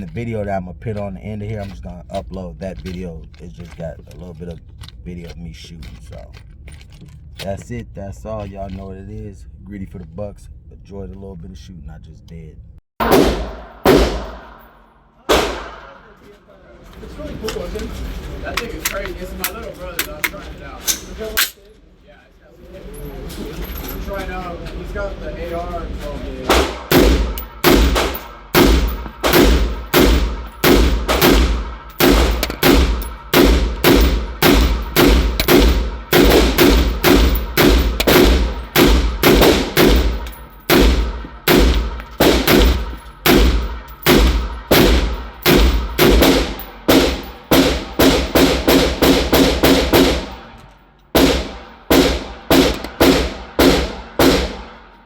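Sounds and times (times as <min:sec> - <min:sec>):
rapid gunfire: 0:13.0 - 0:14.5, 0:26.5 - 0:50.4, 0:51.2 - 0:54.7.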